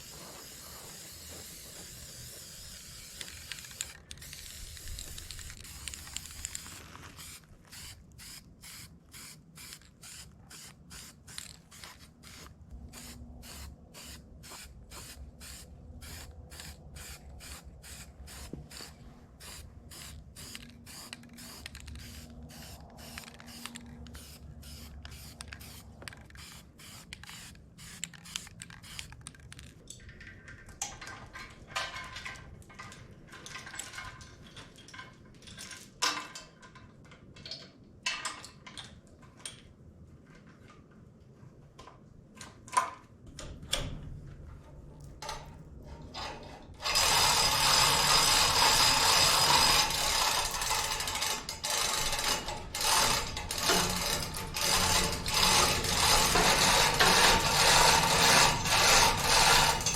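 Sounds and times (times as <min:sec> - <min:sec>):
spray paint hissing: 0:00.0 - 0:29.2.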